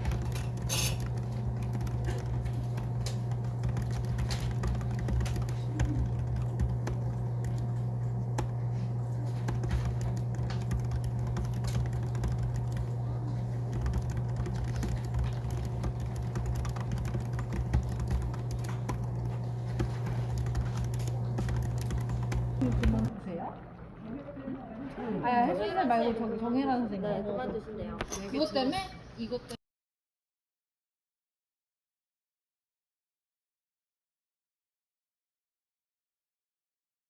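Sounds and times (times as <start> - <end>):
low hum: 0.0 - 25.3.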